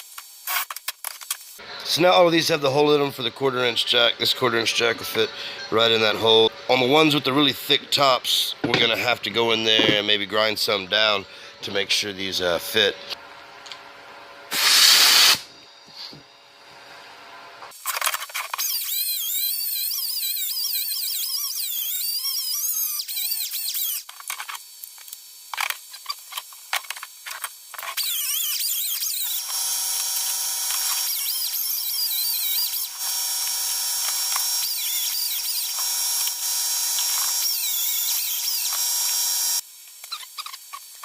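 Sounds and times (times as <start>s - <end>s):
power tool grinding wood: 28.0s - 39.6s.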